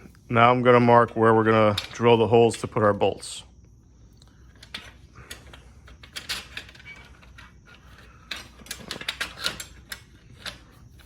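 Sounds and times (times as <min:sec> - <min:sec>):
small parts and tools clicking: 0:04.2 - 0:11.0.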